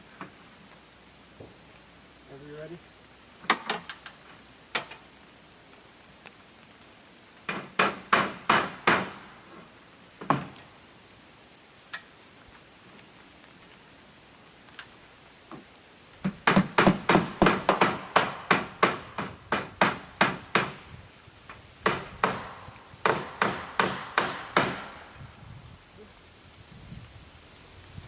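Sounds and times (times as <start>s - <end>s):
hammer striking nails in metal trim: 16.4s - 20.8s, 21.8s - 25.0s.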